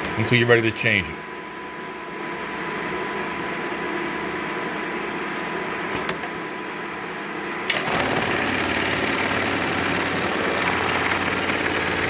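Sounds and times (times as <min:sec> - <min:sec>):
sewing machine humming: 0:07.7 - 0:12.0
sewing machine rattling: 0:07.7 - 0:12.0.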